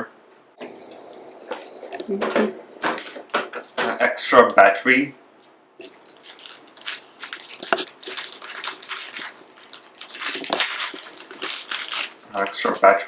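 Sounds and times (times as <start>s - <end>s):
packaging crinkling and rustling: 2.8s - 3.9s, 5.8s - 13.0s.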